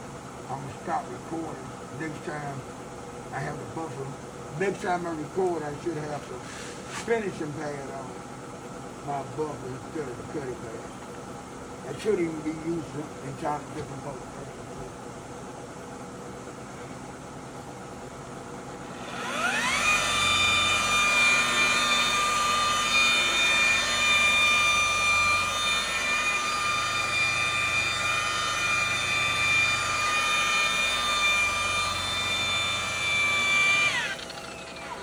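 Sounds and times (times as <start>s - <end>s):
electric polisher whining: 18.8s - 35.0s.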